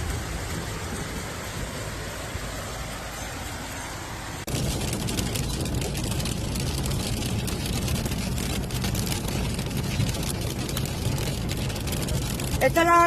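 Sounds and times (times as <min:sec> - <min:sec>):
water rushing into storm drain: 0:00.0 - 0:13.0
light crackles: 0:04.4 - 0:13.0.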